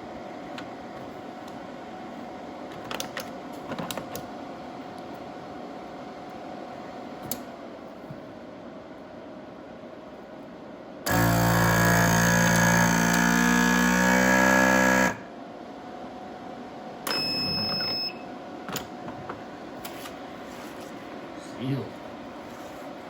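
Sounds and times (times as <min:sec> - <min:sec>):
click: 0:07.3 - 0:07.5
vacuum sealer pump humming: 0:11.1 - 0:15.4.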